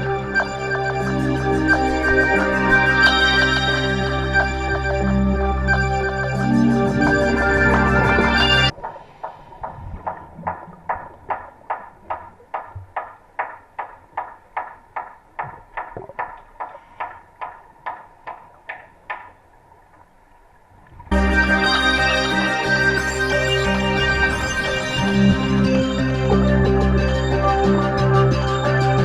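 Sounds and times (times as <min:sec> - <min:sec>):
underwater ringing pulses: 0:00.0 - 0:10.6.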